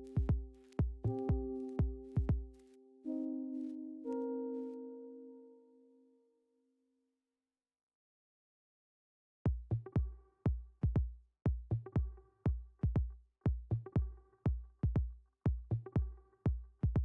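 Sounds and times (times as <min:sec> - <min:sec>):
electronic music with kick drum: 0:00.0 - 0:03.3, 0:09.5 - 0:17.0.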